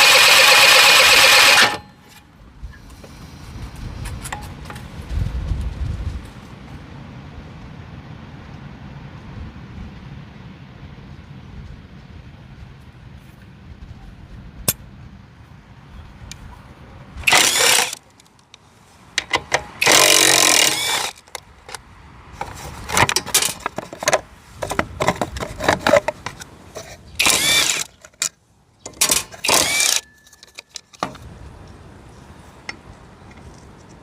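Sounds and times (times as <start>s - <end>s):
scooter engine being cranked: 0.0s - 1.8s, 17.3s - 18.0s, 19.2s - 21.8s, 27.2s - 28.3s, 29.0s - 31.0s.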